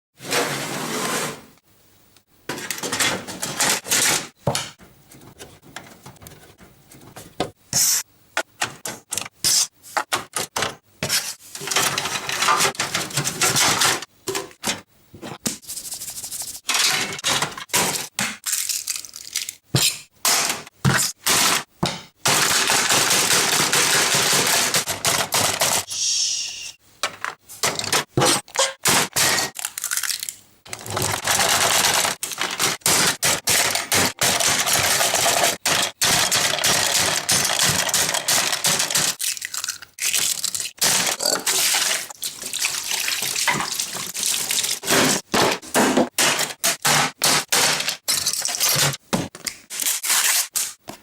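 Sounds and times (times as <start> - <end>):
objects cracking and smashing: 28.8 - 42.2.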